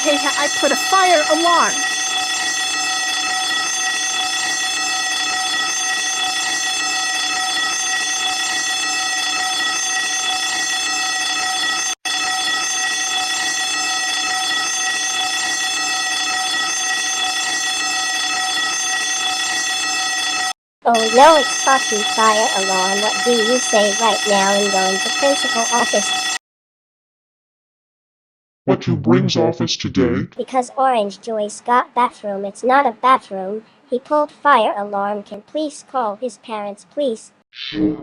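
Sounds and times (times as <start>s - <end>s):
fire alarm tone: 0.0s - 26.4s.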